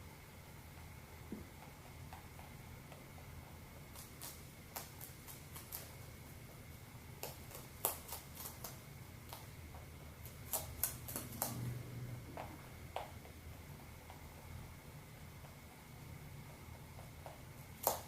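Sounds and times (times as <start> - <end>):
pet crunching food: 1.5 - 14.5.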